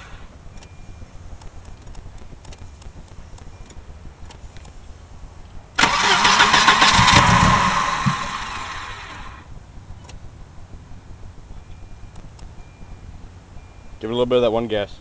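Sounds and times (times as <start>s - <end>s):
engine firing and sputtering: 5.7s - 12.6s
starter cranking: 5.8s - 9.4s.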